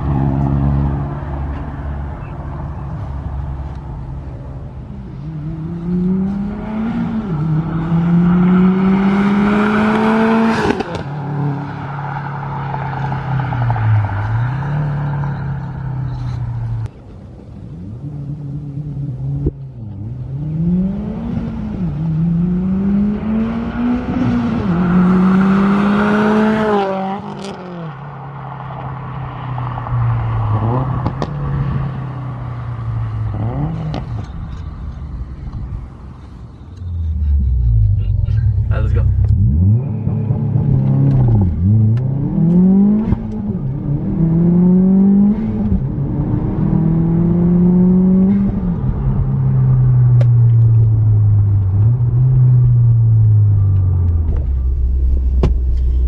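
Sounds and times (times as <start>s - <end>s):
car engine revving: 0.0s - 16.9s, 17.7s - 56.0s
exhaust crack: 48.5s - 56.0s.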